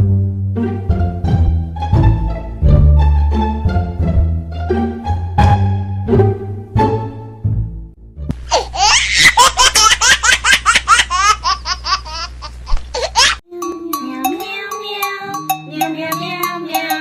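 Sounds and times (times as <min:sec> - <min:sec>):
high-pitched giggling: 0:08.5 - 0:13.4
music with plucked mallet notes: 0:13.5 - 0:17.0.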